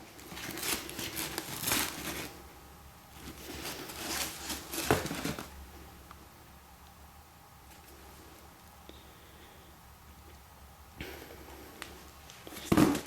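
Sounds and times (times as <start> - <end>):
cardboard box crinkling and rustling: 0.1 - 2.3, 3.2 - 5.5.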